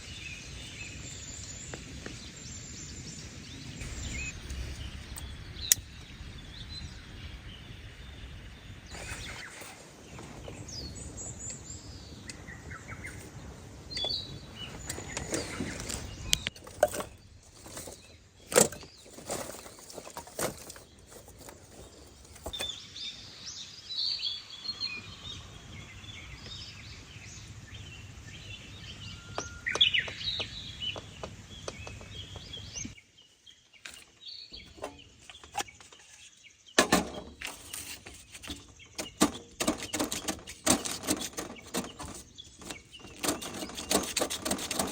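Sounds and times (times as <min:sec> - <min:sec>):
small birds chirping: 0:00.0 - 0:44.9
steady outdoor background: 0:00.0 - 0:44.9
clicks and knocks from handling: 0:14.8 - 0:22.7, 0:33.8 - 0:44.9.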